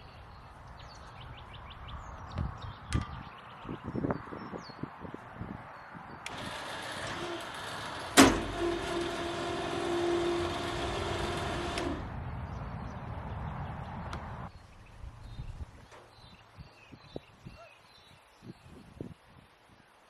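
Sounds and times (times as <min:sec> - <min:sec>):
quieter mechanical noise: 0:06.2 - 0:16.6
machine humming: 0:06.3 - 0:12.4.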